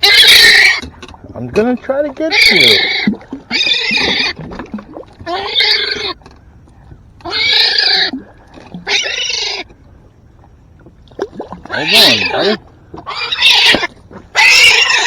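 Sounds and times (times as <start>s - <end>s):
gull squawking in distress: 0.0s - 0.8s, 2.2s - 4.4s, 11.7s - 15.0s.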